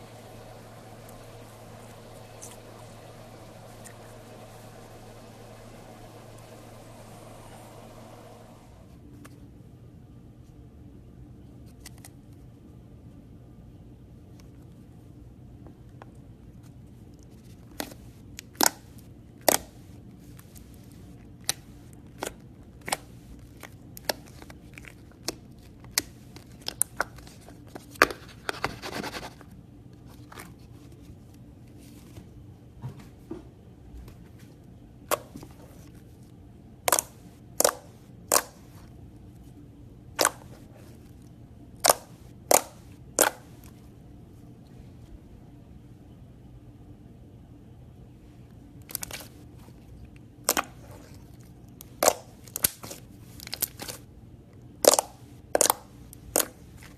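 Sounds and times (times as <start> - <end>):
slime popping and clicking: 17.8 - 19.8, 36.9 - 38.7, 41.8 - 43.5, 51.9 - 54.0, 54.8 - 56.6.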